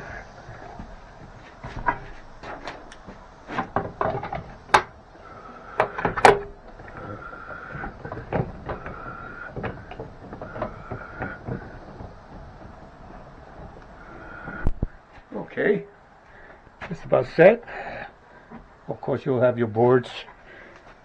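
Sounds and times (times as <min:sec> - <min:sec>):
clamps and boards knocking: 0:01.6 - 0:05.0, 0:05.7 - 0:14.2.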